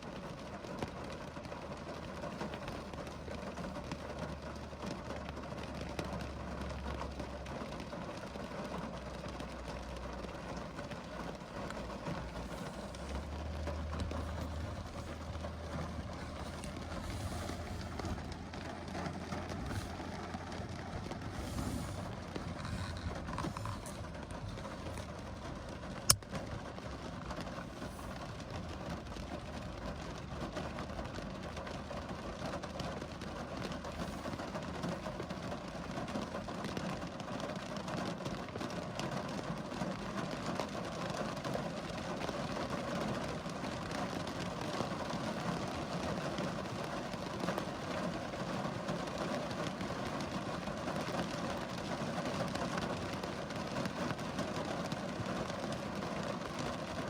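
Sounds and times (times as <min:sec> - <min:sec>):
rain patter: 0:00.0 - 0:57.0.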